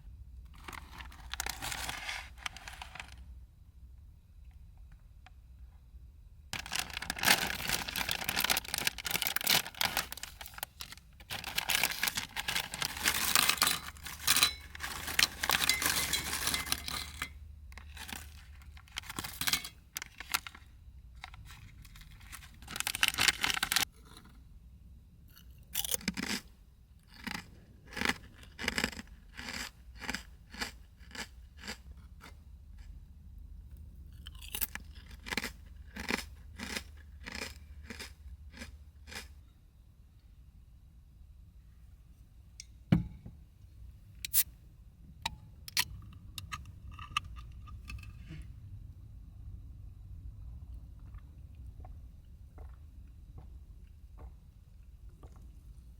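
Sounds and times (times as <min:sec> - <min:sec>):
wrapper crackling and tearing: 0:00.6 - 0:03.2, 0:06.6 - 0:20.6, 0:21.5 - 0:23.9.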